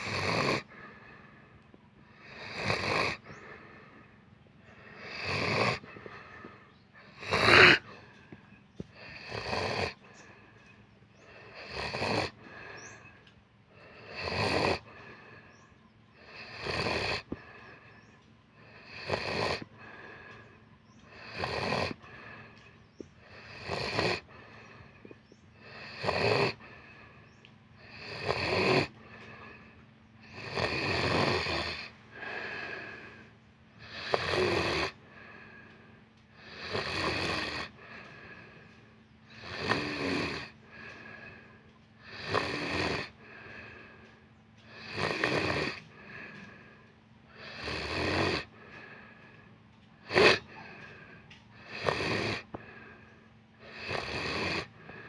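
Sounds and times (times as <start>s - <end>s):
person snoring: 0.0s - 10.6s, 11.2s - 27.2s, 27.8s - 49.4s, 50.0s - 55.0s
quiet breathing: 0.0s - 55.0s.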